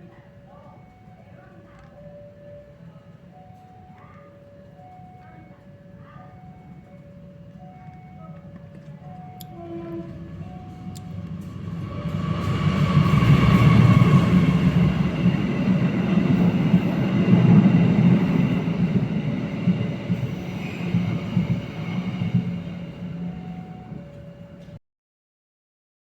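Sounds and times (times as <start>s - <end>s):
train rumbling over level crossing: 5.9s - 24.8s.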